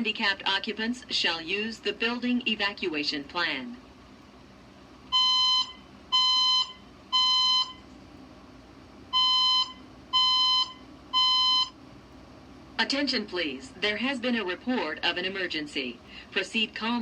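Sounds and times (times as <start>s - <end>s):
fire alarm evacuation beeps: 5.1s - 7.8s, 9.1s - 11.8s.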